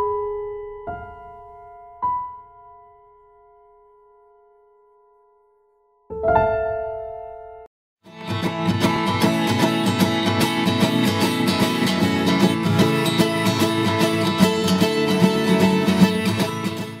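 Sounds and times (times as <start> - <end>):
upbeat acoustic guitar picking: 8.1 - 17.0.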